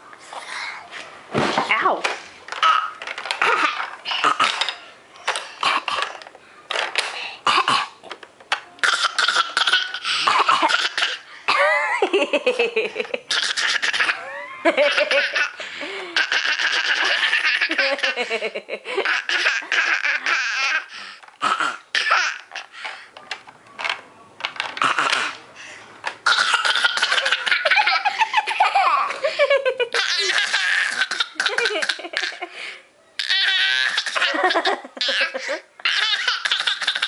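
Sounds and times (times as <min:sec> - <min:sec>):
toddler fake coughing: 0:08.8 - 0:11.7, 0:26.2 - 0:27.6, 0:30.0 - 0:32.4, 0:33.2 - 0:37.0
toddler laughing: 0:13.3 - 0:21.0, 0:26.5 - 0:32.5, 0:33.2 - 0:37.0.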